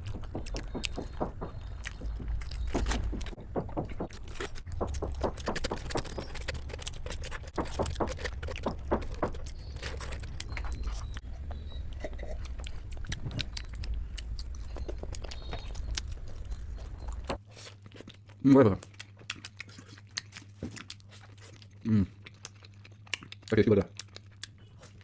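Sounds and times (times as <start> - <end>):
steady low hum: 0.0 - 17.4
chewing food: 0.0 - 25.0.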